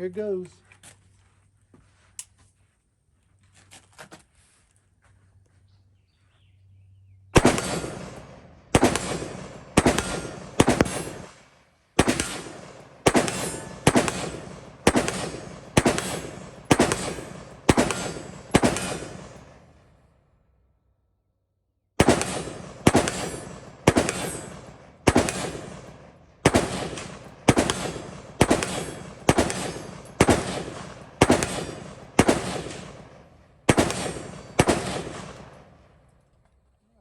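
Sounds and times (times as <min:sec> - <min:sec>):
gunshots with long echo: 0:07.4 - 0:20.2, 0:22.0 - 0:36.2.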